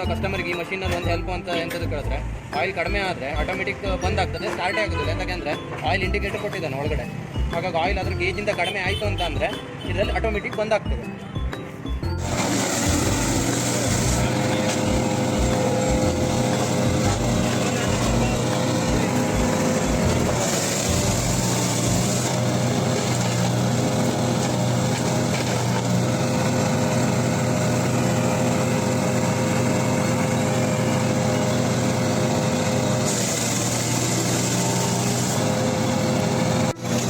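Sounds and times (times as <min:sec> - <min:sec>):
wood chipper engine running: 0:12.1 - 0:37.0.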